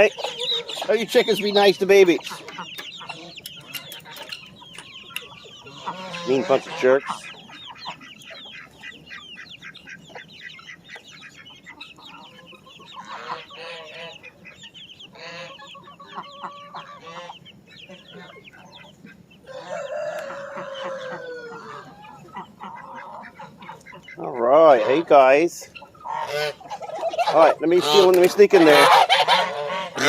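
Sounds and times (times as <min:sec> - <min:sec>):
chickens clucking: 0:00.0 - 0:30.0
rooster crowing: 0:19.5 - 0:22.0.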